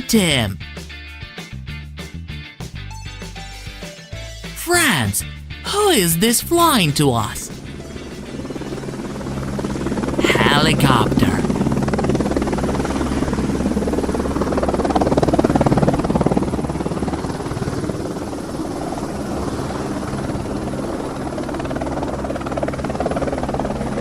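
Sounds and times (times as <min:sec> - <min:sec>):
helicopter engine hum: 0:07.5 - 0:10.2, 0:11.4 - 0:23.9.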